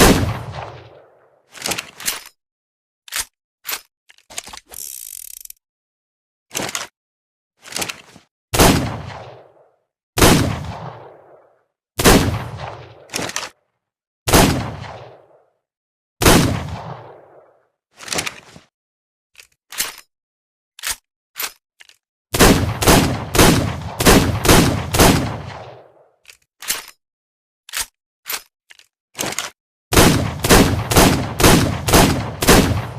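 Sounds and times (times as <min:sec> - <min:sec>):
echoing revolver gunshots: 0:00.0 - 0:01.1, 0:08.6 - 0:09.6, 0:10.2 - 0:11.4, 0:12.0 - 0:13.1, 0:14.3 - 0:15.3, 0:16.2 - 0:17.4, 0:22.4 - 0:25.9, 0:29.9 - 0:32.9.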